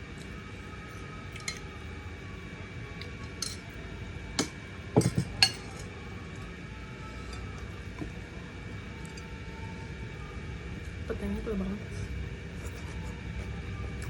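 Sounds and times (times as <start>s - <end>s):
steady low hum: 0.0s - 14.0s
dishes and utensils clinking: 3.2s - 3.7s, 4.4s - 5.9s.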